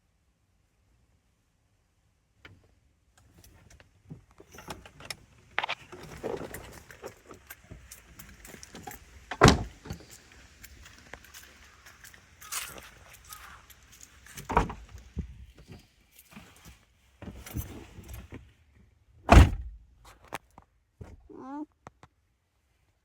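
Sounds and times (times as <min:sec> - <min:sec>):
objects clicking and rustling: 0:09.8 - 0:16.7
loud thump: 0:19.3 - 0:19.8.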